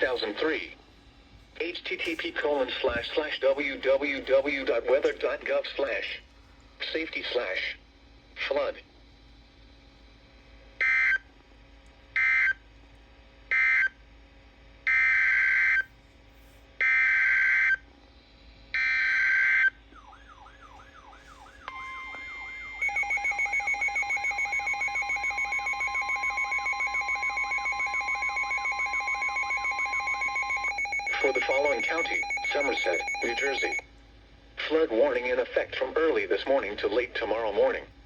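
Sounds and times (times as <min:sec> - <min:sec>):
steady warning tone: 0:00.0 - 0:11.4, 0:13.4 - 0:16.0, 0:16.8 - 0:33.9, 0:34.6 - 0:38.0
rapidly pulsing alarm beep: 0:10.8 - 0:11.3, 0:14.9 - 0:15.9, 0:16.8 - 0:33.9
warbling siren-like tone: 0:18.9 - 0:33.8
data bursts: 0:22.0 - 0:33.8.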